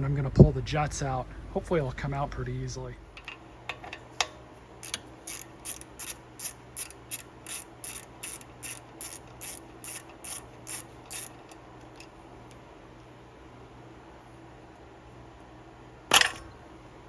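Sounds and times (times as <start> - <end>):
ratchet wrench clicking: 3.2 - 12.1.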